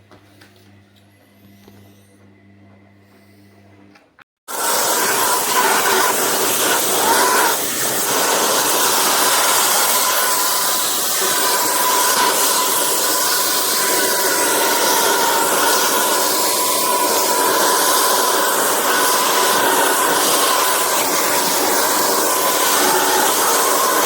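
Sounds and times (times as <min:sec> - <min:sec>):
vacuum cleaner running: 0:04.5 - 0:24.0.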